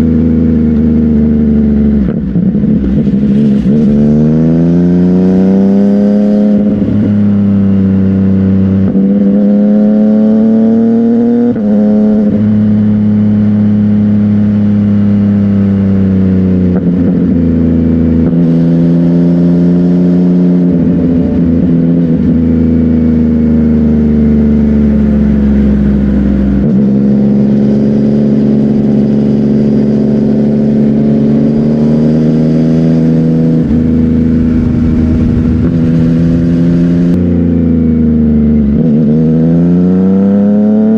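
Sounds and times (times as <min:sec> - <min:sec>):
motorcycle engine running loud: 0:00.0 - 0:40.9.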